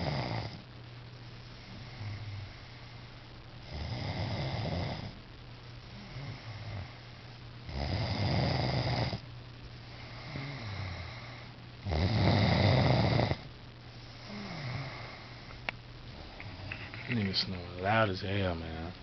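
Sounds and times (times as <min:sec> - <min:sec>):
man snoring loudly: 0:00.0 - 0:00.6, 0:03.7 - 0:05.2, 0:07.7 - 0:09.2, 0:10.2 - 0:13.4, 0:14.3 - 0:15.2
soft breaths: 0:01.4 - 0:03.4, 0:09.1 - 0:11.8, 0:13.3 - 0:18.1.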